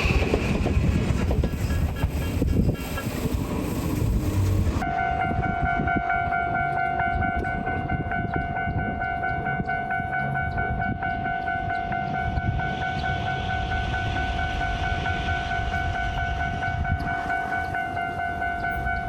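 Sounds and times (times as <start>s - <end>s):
train passing: 0.0s - 19.0s
level crossing warning bell: 4.8s - 19.0s.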